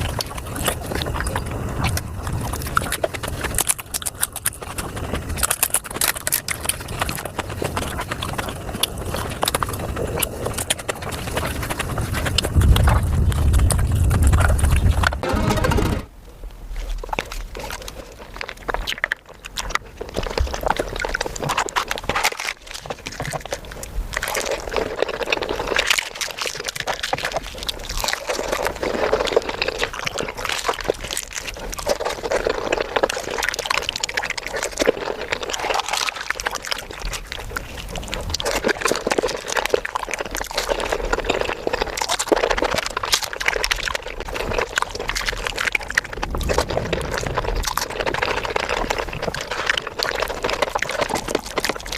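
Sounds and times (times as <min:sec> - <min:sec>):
wet chewing and smacking: 0:00.0 - 0:15.2, 0:16.7 - 0:51.9.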